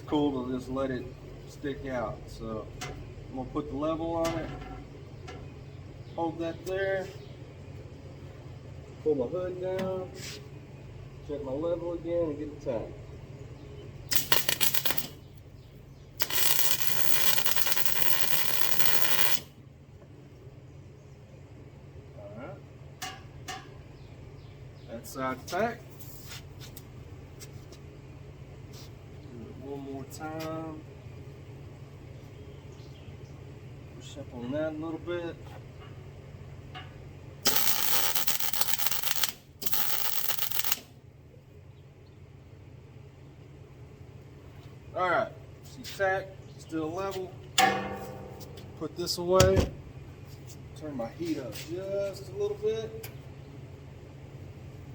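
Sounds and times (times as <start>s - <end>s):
steady low hum: 0.0s - 54.9s
arc welder crackling: 14.1s - 15.5s, 16.1s - 19.6s, 37.4s - 41.0s.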